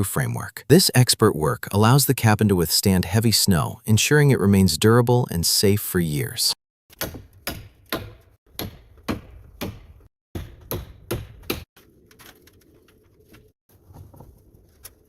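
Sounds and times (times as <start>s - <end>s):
hammer striking timber: 6.9s - 11.7s.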